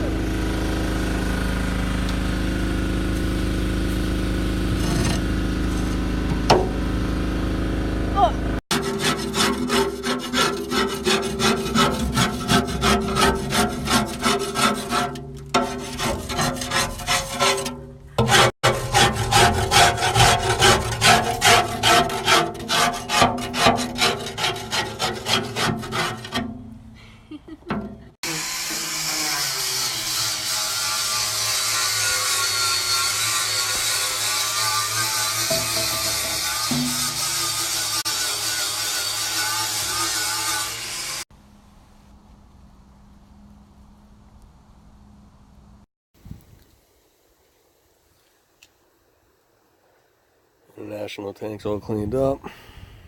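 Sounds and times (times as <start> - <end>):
steady mechanical hum: 0.0 - 26.1
rhythmic scrubbing strokes: 8.7 - 26.4.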